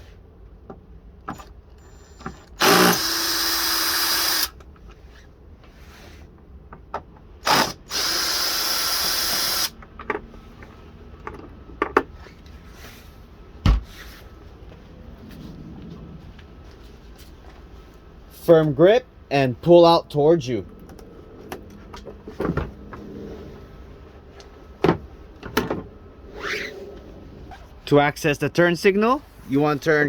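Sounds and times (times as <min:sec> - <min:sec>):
power drill running: 0:01.3 - 0:04.6, 0:07.4 - 0:09.8.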